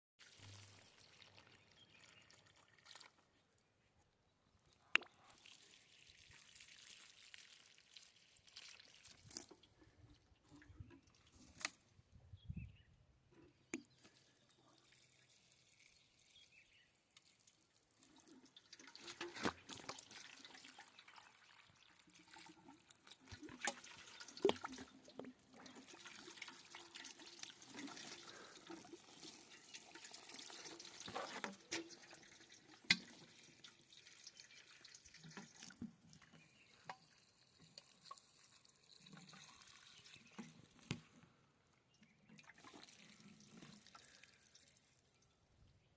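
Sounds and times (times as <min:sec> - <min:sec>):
water drips and clicks: 0:04.6 - 0:11.9, 0:13.3 - 0:16.5, 0:17.1 - 0:41.3, 0:42.0 - 0:45.3
water running and splashing: 0:05.0 - 0:09.8, 0:14.0 - 0:40.9, 0:42.5 - 0:44.8.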